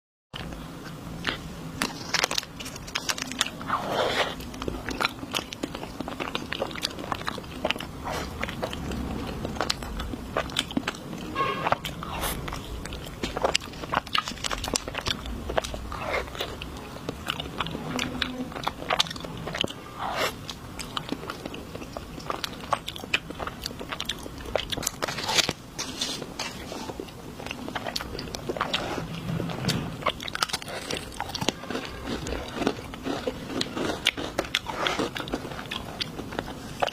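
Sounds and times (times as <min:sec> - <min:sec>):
chewing and wet mouth sounds: 0:00.4 - 0:36.9
crunchy bites: 0:27.4 - 0:36.9.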